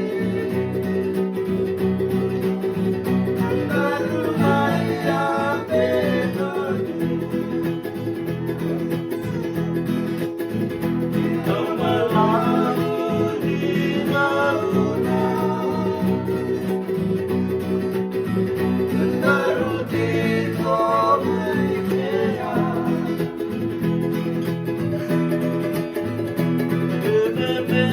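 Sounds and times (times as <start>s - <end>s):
person singing: 0.0s - 1.5s, 3.3s - 9.7s, 11.0s - 17.2s, 18.8s - 23.8s, 26.8s - 27.9s
guitars strummed and plucked: 0.0s - 27.9s.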